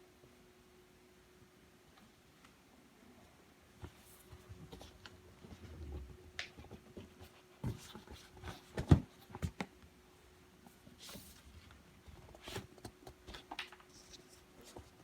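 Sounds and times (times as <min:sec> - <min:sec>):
faint steady hum: 0:00.0 - 0:15.0
handling thumps and rustles: 0:03.8 - 0:09.7.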